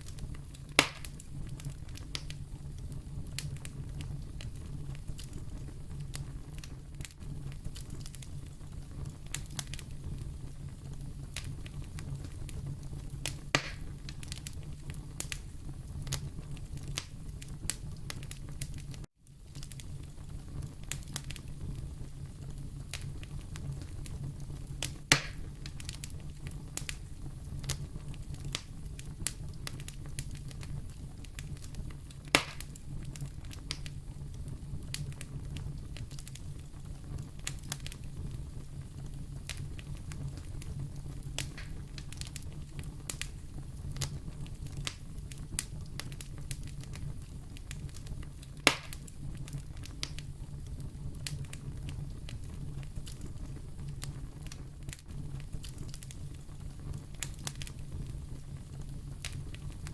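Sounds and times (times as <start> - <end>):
fire pops: 0.0 - 59.9
wood fire crackling: 0.0 - 59.9.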